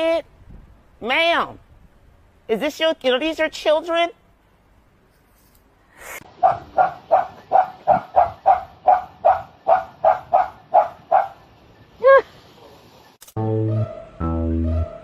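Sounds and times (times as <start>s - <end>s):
dog barking: 6.4s - 11.4s.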